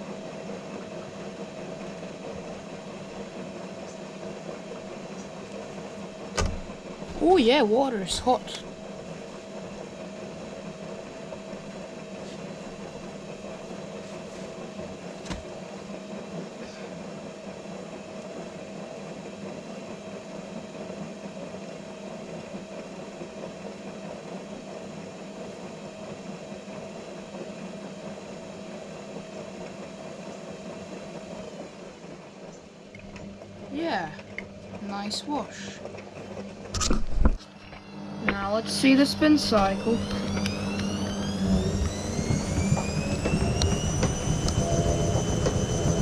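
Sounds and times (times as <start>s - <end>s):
washing machine spinning: 0.0s - 46.0s
washing machine click: 6.3s - 7.3s.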